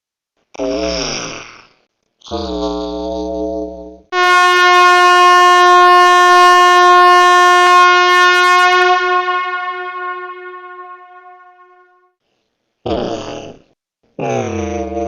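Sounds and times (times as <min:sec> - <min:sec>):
buzzy electronic tone: 0:04.2 - 0:11.9.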